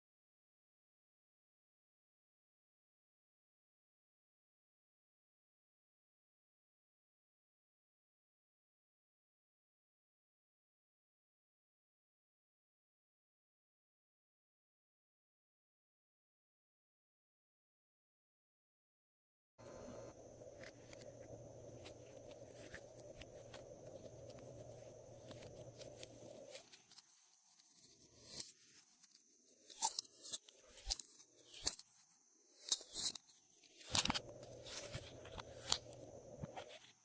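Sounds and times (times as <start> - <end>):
steady background hiss: 19.6 - 28.8.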